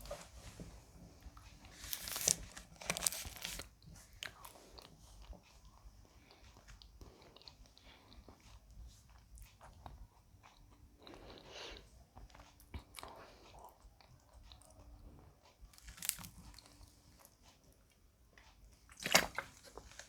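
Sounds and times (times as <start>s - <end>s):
chewing and swallowing: 2.0s - 17.6s.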